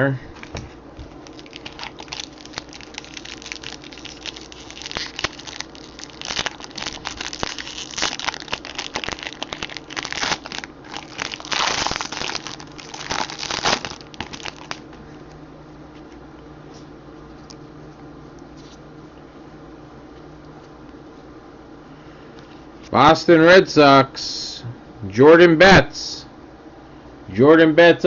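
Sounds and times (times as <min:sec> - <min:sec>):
low hum: 0:00.0 - 0:20.6
foil wrapper tearing and crinkling: 0:01.1 - 0:14.9.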